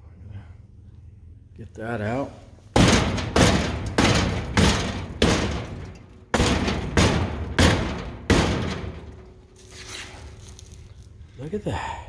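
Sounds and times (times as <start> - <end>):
rubber mallet pounding sheet metal: 2.8 - 9.5.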